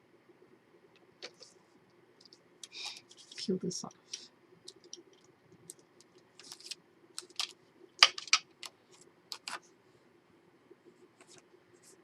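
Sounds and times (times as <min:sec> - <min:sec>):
paper crackling as tape liner peels: 0:06.4 - 0:08.7.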